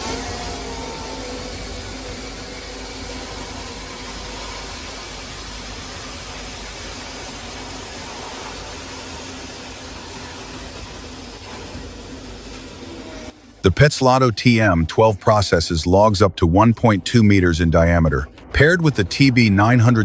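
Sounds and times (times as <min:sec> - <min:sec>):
heavy machinery running: 0:00.0 - 0:13.8, 0:16.7 - 0:20.0.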